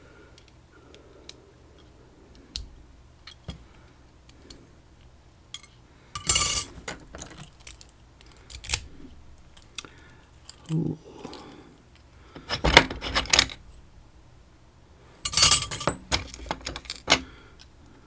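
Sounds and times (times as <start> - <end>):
keys rattling: 5.6 - 7.9, 15.3 - 17.0
metal clicks of lock parts: 5.6 - 8.8, 15.3 - 17.7.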